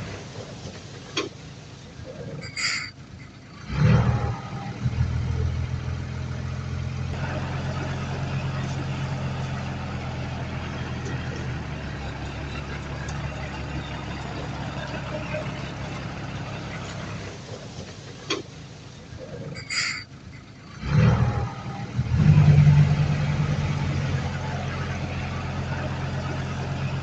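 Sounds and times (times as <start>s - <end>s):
heavy diesel engine running: 0.0s - 27.0s.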